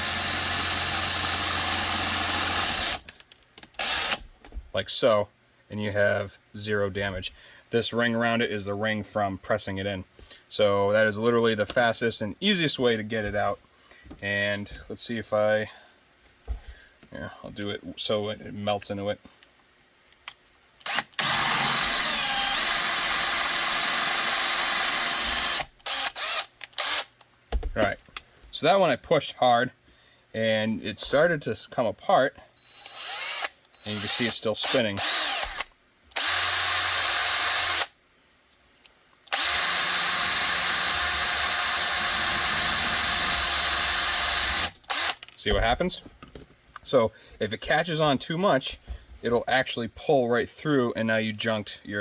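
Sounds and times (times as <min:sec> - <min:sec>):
power drill whining: 0:00.0 - 0:03.2, 0:03.8 - 0:04.3, 0:20.8 - 0:27.1, 0:32.6 - 0:37.9, 0:39.3 - 0:45.2.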